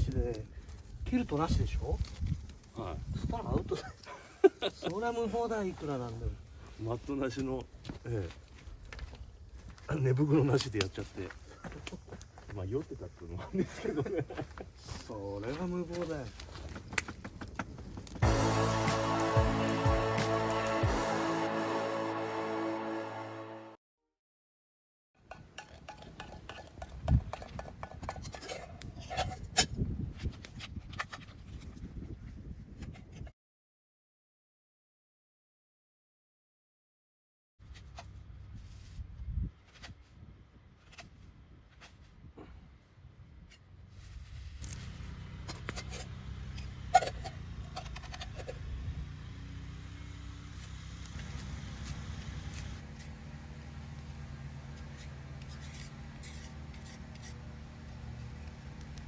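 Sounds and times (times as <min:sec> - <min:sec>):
fire crackles and snaps: 0:00.0 - 0:02.8, 0:10.5 - 0:13.0, 0:16.3 - 0:18.2
background music: 0:18.2 - 0:23.8.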